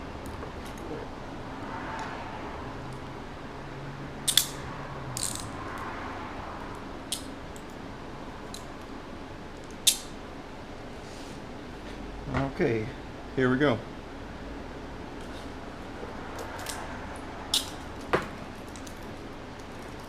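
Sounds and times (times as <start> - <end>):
handcuffs clicking and clinking: 4.2 - 5.6, 7.1 - 7.8, 16.4 - 20.0.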